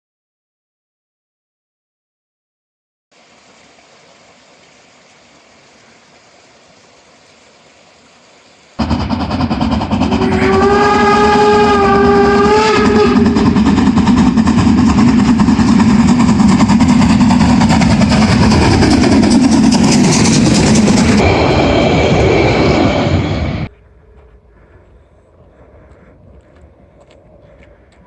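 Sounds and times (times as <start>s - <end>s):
steam locomotive whistle: 8.8s - 13.8s
train rumbling and rattling: 8.8s - 28.0s.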